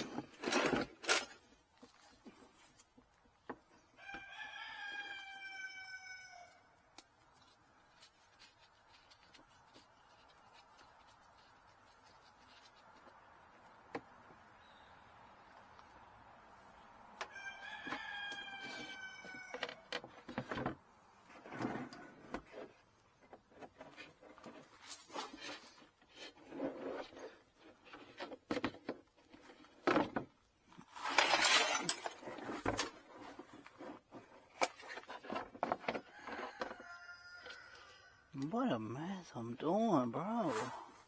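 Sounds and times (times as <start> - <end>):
rooster crowing: 4.0 - 6.7, 17.2 - 19.9, 36.0 - 38.4
scraping and rustling: 7.2 - 14.5, 17.2 - 38.2.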